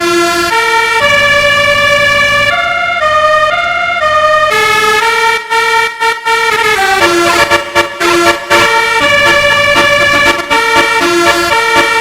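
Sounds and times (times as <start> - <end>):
melodica playing slow melody: 6.8 - 12.0.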